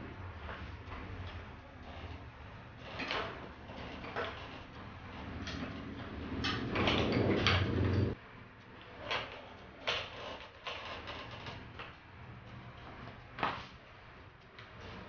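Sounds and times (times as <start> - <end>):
rushing noise with low hum: 0.0 - 8.8.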